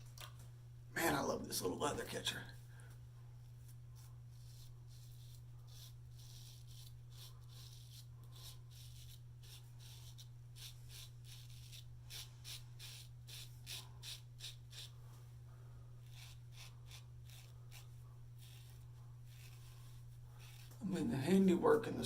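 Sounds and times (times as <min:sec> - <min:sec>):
steady low hum: 0:00.0 - 0:22.0
razor scraping stubble: 0:03.6 - 0:15.0, 0:16.0 - 0:22.0.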